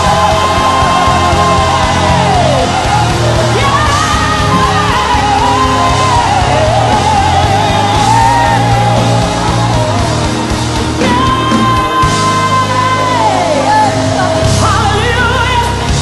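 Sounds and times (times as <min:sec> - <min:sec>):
live worship band music: 0:00.0 - 0:16.0.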